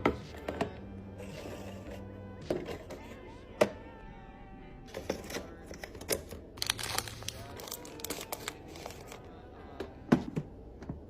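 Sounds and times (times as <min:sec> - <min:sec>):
plastic packaging crinkling: 0:06.6 - 0:09.2.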